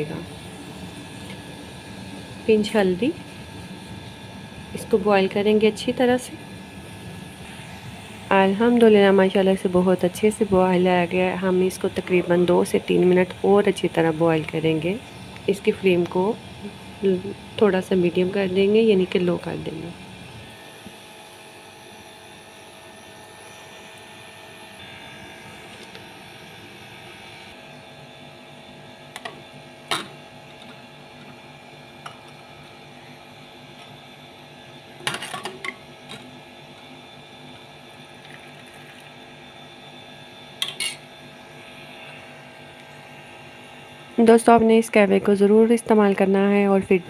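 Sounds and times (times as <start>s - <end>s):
kitchen hum: 0.0s - 47.0s
pot boiling: 29.1s - 41.6s.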